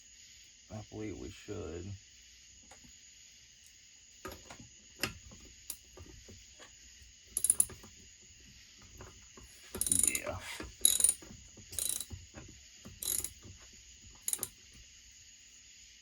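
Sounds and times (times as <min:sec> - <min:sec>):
socket ratchet clicking: 0:07.4 - 0:07.9, 0:09.7 - 0:12.1, 0:13.0 - 0:13.4, 0:14.2 - 0:14.6
metal ticks: 0:13.0 - 0:13.4, 0:14.2 - 0:14.5.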